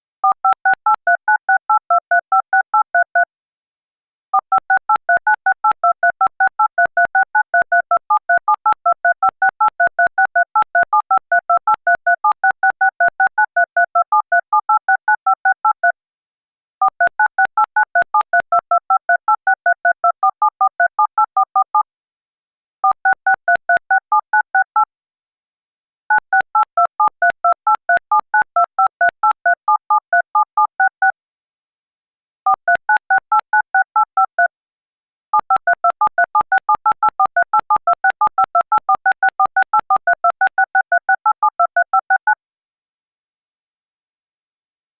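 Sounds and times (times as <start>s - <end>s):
telephone keypad tones: 0.2s - 3.3s, 4.4s - 16.0s, 16.8s - 21.8s, 22.8s - 24.9s, 26.1s - 31.2s, 32.5s - 34.5s, 35.4s - 42.4s.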